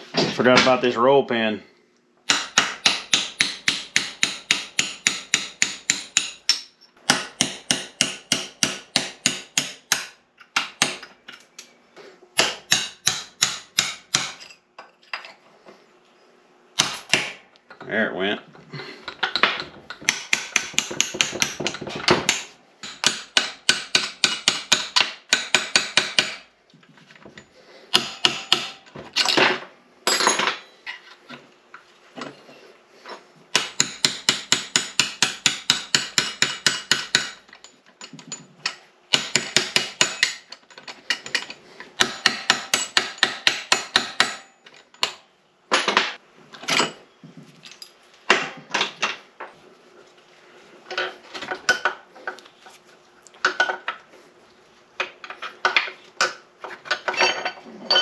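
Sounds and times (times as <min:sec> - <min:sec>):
hammer striking steel: 0:02.3 - 0:11.0, 0:12.4 - 0:14.4, 0:20.1 - 0:26.4, 0:28.0 - 0:28.9, 0:33.6 - 0:37.4, 0:42.0 - 0:45.2.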